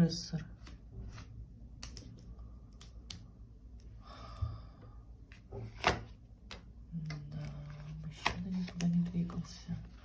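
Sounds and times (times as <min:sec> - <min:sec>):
cards rustling: 0:07.4 - 0:10.0.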